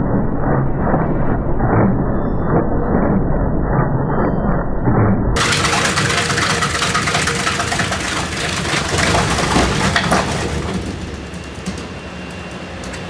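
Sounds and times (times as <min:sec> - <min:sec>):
shredder grinding material: 0:05.4 - 0:13.0.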